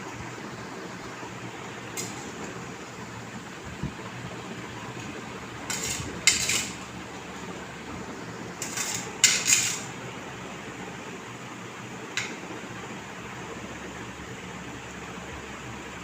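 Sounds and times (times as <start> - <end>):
tableware clinking on a plate: 8.6 - 9.9.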